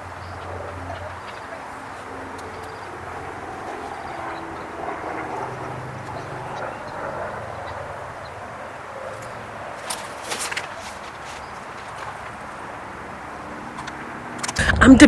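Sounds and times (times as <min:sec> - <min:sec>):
outdoor background rumble: 0:00.0 - 0:15.0
sharp clicks: 0:13.7 - 0:14.6.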